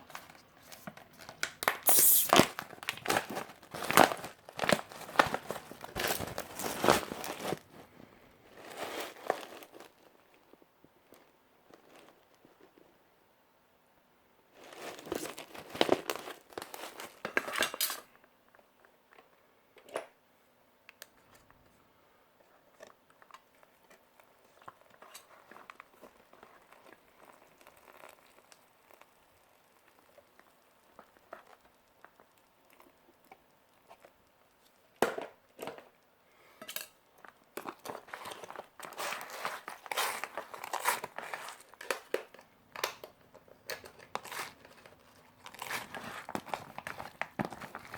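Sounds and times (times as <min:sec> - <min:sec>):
packaging crinkling: 0:00.1 - 0:12.4, 0:14.6 - 0:17.8, 0:22.7 - 0:34.6, 0:37.2 - 0:47.9.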